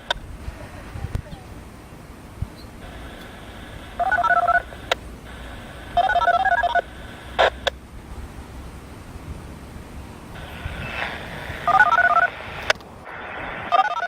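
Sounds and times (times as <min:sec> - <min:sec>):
sharp clicks: 0:02.8 - 0:07.8, 0:11.7 - 0:12.9
touch-tone beeps over radio: 0:03.0 - 0:07.7, 0:10.4 - 0:12.7, 0:13.5 - 0:14.0.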